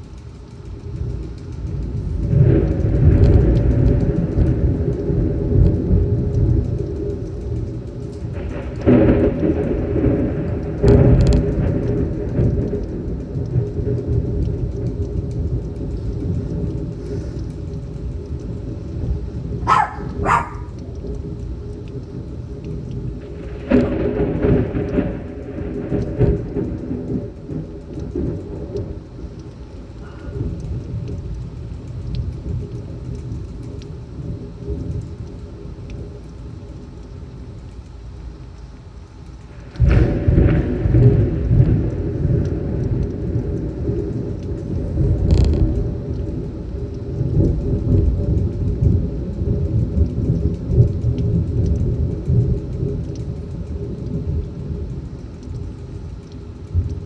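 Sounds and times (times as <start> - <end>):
rumbling thunder: 0.0 - 38.3, 39.4 - 57.0
gusting wind: 0.0 - 57.0
torrential rain: 0.0 - 57.0
sharp thunder crack: 8.4 - 13.1, 19.4 - 21.4, 23.1 - 28.8, 39.8 - 44.4.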